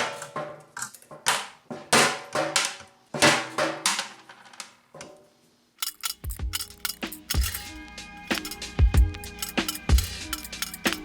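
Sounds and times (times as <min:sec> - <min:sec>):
bolt cutters snapping wire: 0:05.8 - 0:07.7, 0:08.3 - 0:11.0
music with kick-drum beat: 0:06.3 - 0:11.0.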